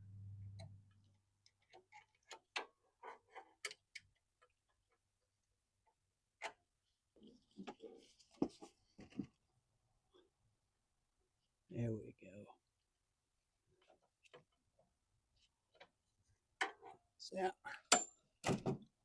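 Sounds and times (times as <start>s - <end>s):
faint metal clicks of tools and bolts: 0.6s - 5.0s.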